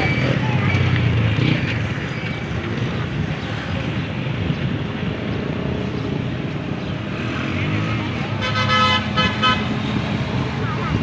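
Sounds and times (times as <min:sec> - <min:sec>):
road traffic: 0:00.0 - 0:11.0
vehicle horn: 0:08.4 - 0:09.8.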